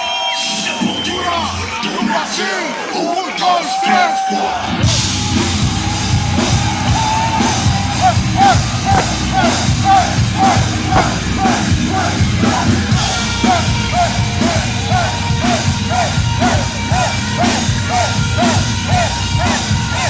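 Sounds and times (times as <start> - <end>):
heavy metal band playing live: 4.4 - 20.0.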